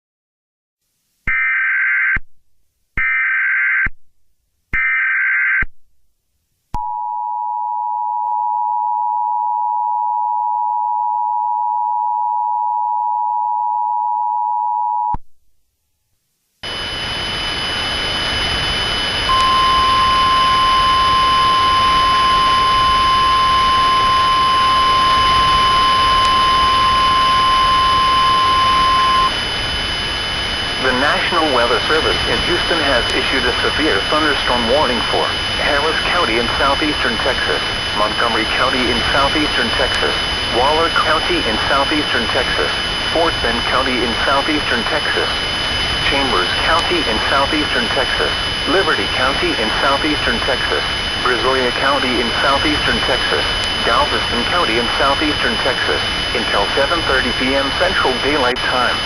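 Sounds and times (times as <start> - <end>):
static hiss: 16.6 - 59.0
steady warning alarm tone: 16.6 - 59.0
warbling data bursts: 16.7 - 59.0
two-tone attention signal: 19.3 - 29.4.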